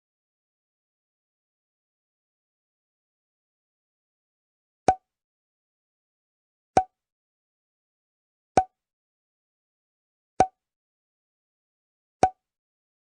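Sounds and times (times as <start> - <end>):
bottle cork popping: 8.6 - 8.8, 10.4 - 10.6.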